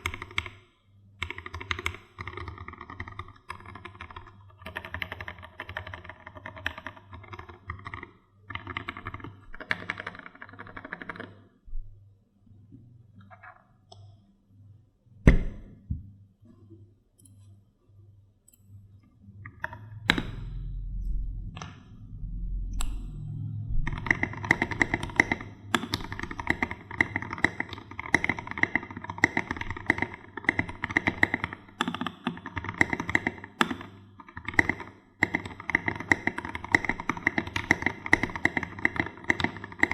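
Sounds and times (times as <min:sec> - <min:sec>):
typing on mechanical keyboard: 0:00.0 - 0:00.6, 0:01.2 - 0:11.4, 0:23.9 - 0:39.9.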